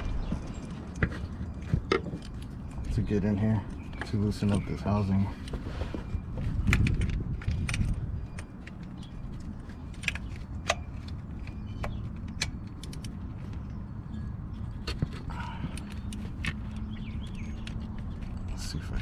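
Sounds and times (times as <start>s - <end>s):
low rumble: 0.0s - 10.5s.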